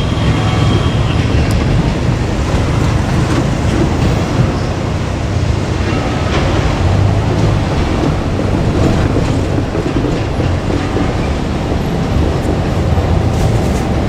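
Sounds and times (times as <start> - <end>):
diesel railcar rumbling past: 0.0 - 14.0.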